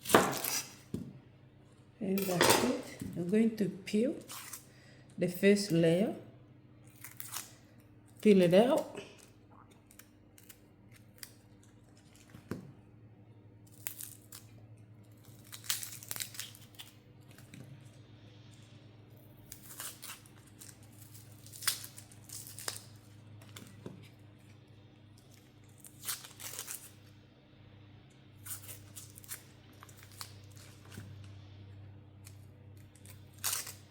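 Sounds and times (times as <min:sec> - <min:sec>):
onion skin crackling: 0:00.0 - 0:01.0, 0:06.8 - 0:12.5, 0:13.6 - 0:17.6, 0:18.6 - 0:24.6, 0:25.2 - 0:27.1, 0:28.4 - 0:31.6, 0:32.2 - 0:33.9.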